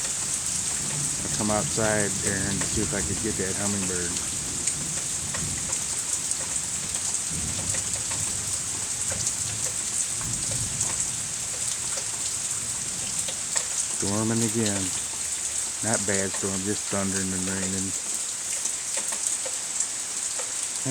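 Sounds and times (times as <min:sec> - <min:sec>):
thunder rumbling: 0:00.0 - 0:11.5
raindrops ticking: 0:00.0 - 0:20.9
steady rain falling: 0:00.0 - 0:20.9.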